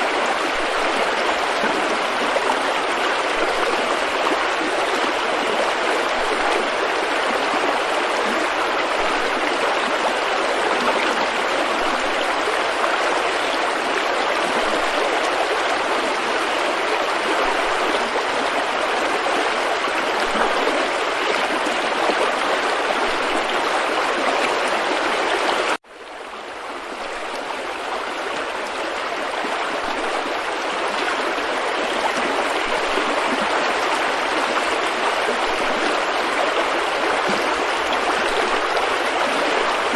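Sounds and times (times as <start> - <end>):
river rapids rushing: 27.3 - 39.9.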